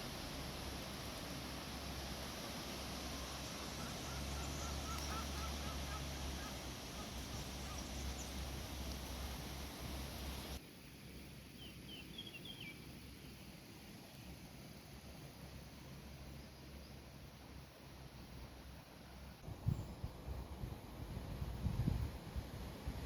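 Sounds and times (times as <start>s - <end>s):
small birds chirping faintly: 1.0s - 20.1s
wind blowing: 19.4s - 23.0s.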